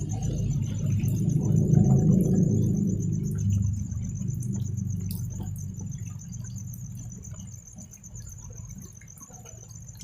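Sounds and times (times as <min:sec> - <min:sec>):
low drone: 0:00.0 - 0:07.2
crickets trilling: 0:00.0 - 0:10.0.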